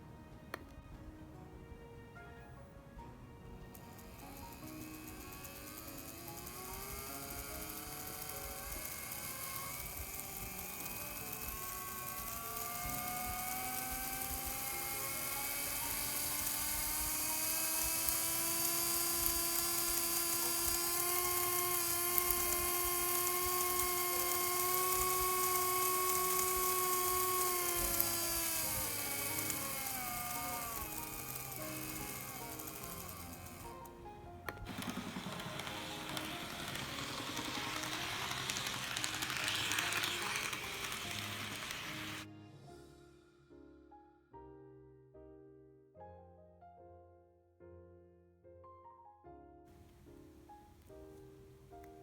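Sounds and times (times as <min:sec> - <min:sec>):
small electric motor whining: 0:03.4 - 0:42.3.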